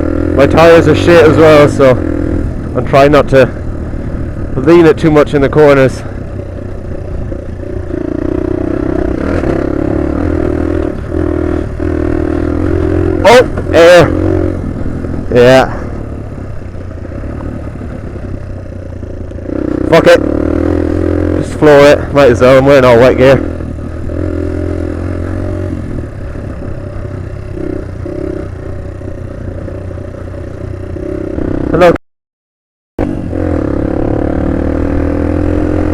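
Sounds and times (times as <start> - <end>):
small motorcycle engine running: 0.0 - 31.9.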